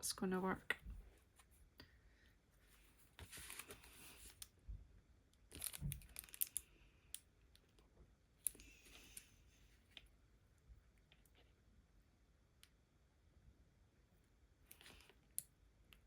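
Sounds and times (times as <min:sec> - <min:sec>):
soft rustle: 0:00.5 - 0:04.6.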